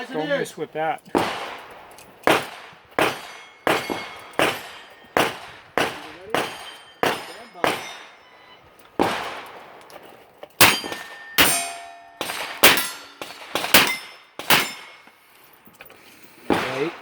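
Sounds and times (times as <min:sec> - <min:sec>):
steel plate ringing: 0:03.1 - 0:05.3, 0:06.3 - 0:08.6, 0:10.6 - 0:15.1.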